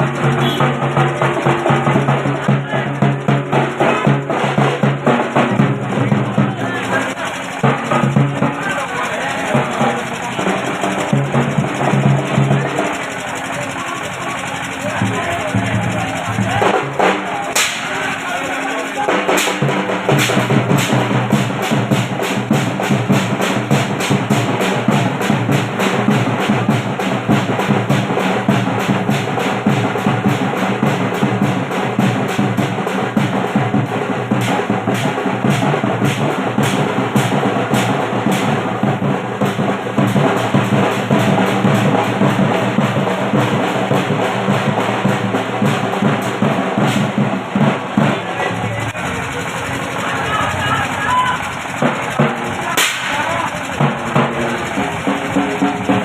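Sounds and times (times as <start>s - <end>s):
drum-heavy dance music: 13.5s - 56.0s.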